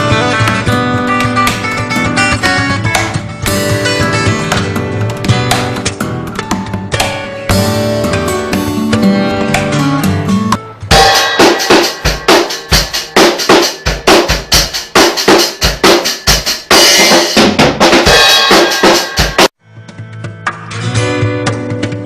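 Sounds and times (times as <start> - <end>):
plucked-string melody: 0.0 - 14.2, 19.6 - 22.0
drum kit playing a beat: 0.0 - 22.0.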